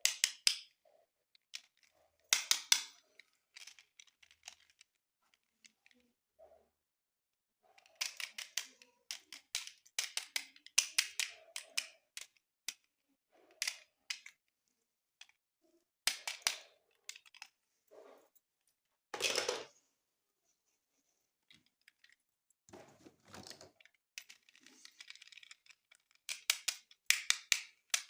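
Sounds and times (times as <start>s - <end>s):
plastic packaging clicking and crinkling: 21.6s - 28.0s.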